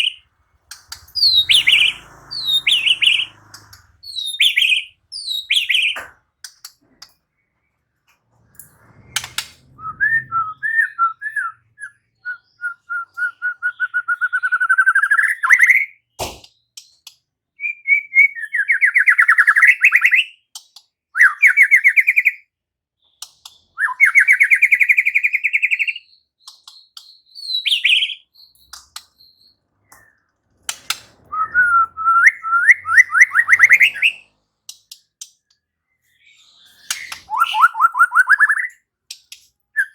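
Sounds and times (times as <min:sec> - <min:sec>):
bird singing trills and whistles: 0:00.0 - 0:06.0, 0:09.2 - 0:16.0, 0:23.0 - 0:30.3, 0:31.2 - 0:34.3, 0:35.9 - 0:38.9.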